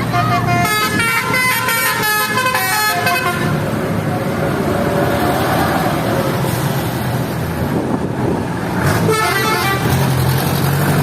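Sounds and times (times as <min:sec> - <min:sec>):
warbling bus musical horn: 0:00.0 - 0:03.7, 0:08.8 - 0:10.1
bus engine running: 0:00.0 - 0:11.0.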